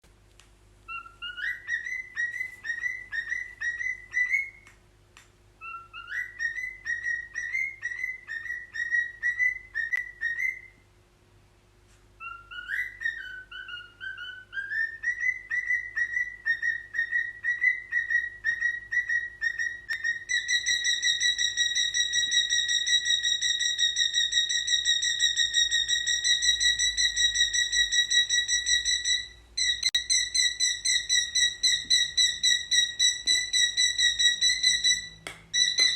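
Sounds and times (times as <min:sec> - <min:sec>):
cockatiel whistling: 0:00.9 - 0:04.8, 0:05.6 - 0:10.8, 0:12.2 - 0:35.9.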